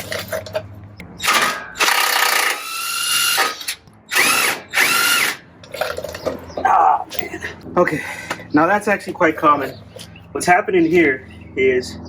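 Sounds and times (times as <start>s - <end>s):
cordless power wrench running: 1.2s - 6.4s.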